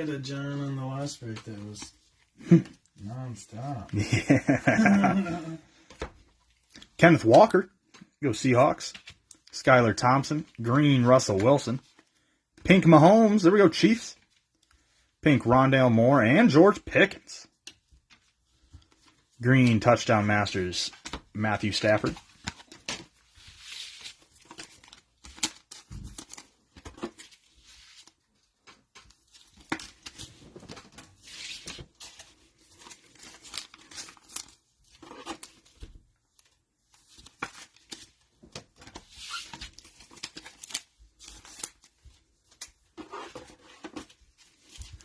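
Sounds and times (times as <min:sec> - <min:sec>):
cards being handled: 0:20.9 - 0:45.0
cellophane tearing and crinkling: 0:32.6 - 0:35.8, 0:39.2 - 0:41.9.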